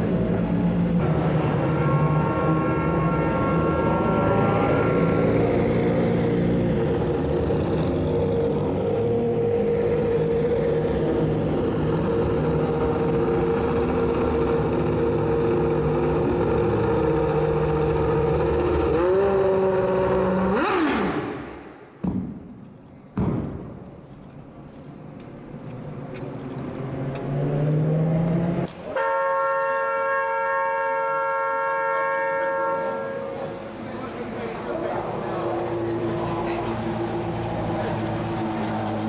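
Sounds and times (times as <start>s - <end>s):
racing car engine high pitch: 0.0s - 21.6s.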